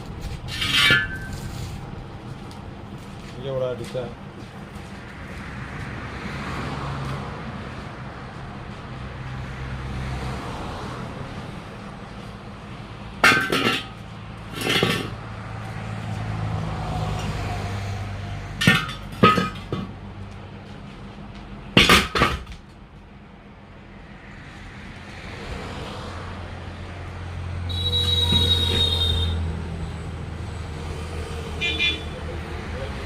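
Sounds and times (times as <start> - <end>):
passing vehicle rumble: 0.0 - 21.8, 22.6 - 33.0
hammer striking steel: 0.6 - 1.4.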